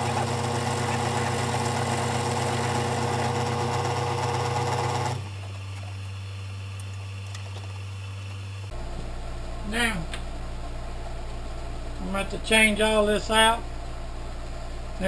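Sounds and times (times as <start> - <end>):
metal lathe whirring: 0.0 - 5.3.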